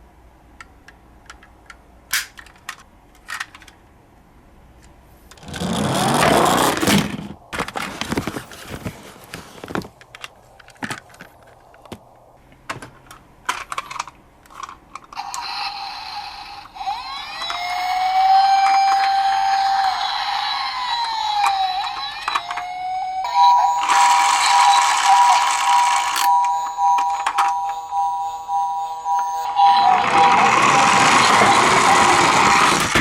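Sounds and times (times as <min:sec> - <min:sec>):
toy car clicks and knocks: 0:00.6 - 0:03.8, 0:12.7 - 0:15.8, 0:16.6 - 0:22.8, 0:23.8 - 0:26.3
loud scraping noise: 0:05.4 - 0:07.4, 0:29.7 - 0:33.0
toy electronic siren: 0:15.2 - 0:33.0.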